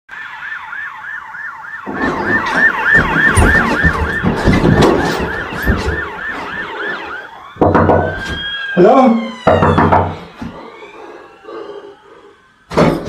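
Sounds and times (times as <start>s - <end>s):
siren in a fast yelp: 0.1s - 13.0s
loud thumps and knocks: 1.9s - 6.9s, 7.6s - 8.6s, 9.4s - 10.8s, 12.7s - 13.0s.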